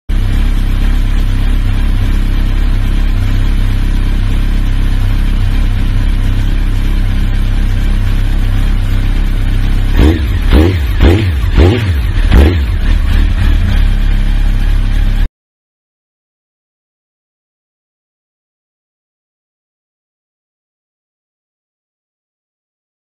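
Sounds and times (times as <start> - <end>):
engine throttle blips: 0.1 - 15.3
motorcycle engine idling: 0.1 - 15.3.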